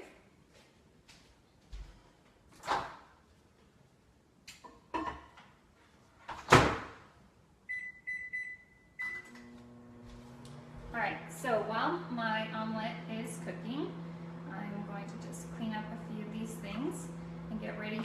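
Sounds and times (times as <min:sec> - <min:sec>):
microwave oven humming: 0:07.7 - 0:18.0.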